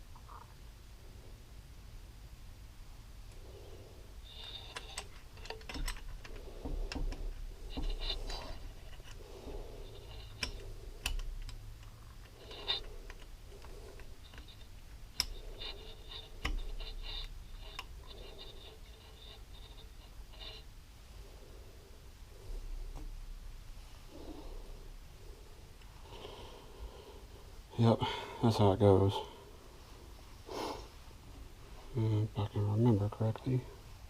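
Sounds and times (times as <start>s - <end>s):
small metal parts clinking: 4.2s - 20.6s.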